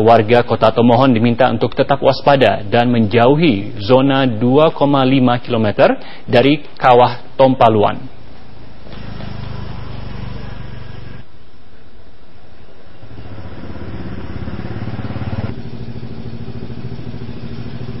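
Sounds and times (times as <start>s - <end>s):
motor engine running: 8.6s - 11.3s, 13.0s - 18.0s.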